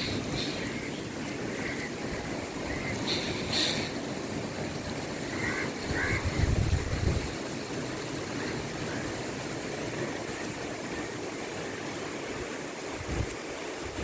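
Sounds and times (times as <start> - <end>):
water: 0.0 - 14.0
wind through palms: 0.0 - 14.0
wind buffeting microphone: 5.8 - 7.4, 12.9 - 14.0.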